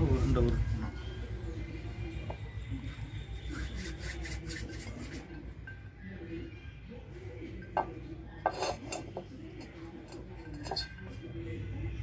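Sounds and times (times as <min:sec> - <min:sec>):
plate clinking and knocking: 0:07.6 - 0:11.2.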